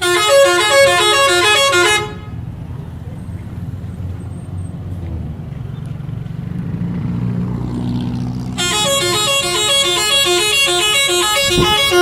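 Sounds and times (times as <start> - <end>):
melodic bus horn: 0.0 - 2.5, 8.6 - 12.0
bus engine rumbling: 0.0 - 12.0.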